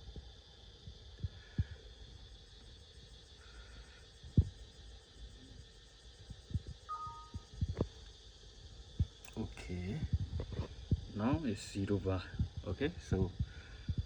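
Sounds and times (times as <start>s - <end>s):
dull low thumps: 10.0s - 11.5s, 12.2s - 14.0s.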